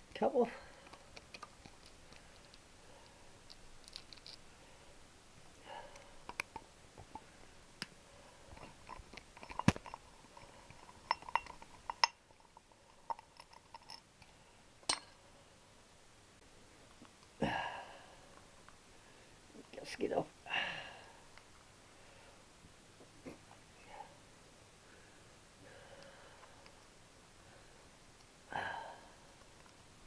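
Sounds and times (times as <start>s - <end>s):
hand tools clicking and clinking: 8.6s - 14.0s.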